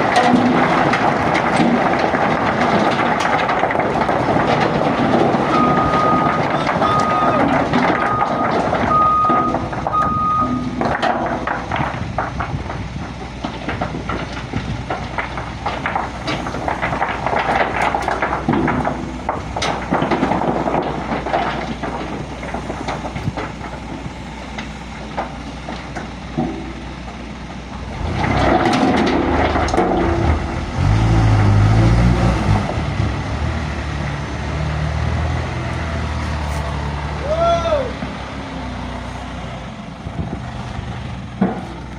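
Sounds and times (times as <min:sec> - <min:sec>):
rough truck engine running: 0:00.0 - 0:41.9
truck reversing alarm beeping: 0:05.5 - 0:10.8
diesel truck engine revving: 0:27.8 - 0:41.9.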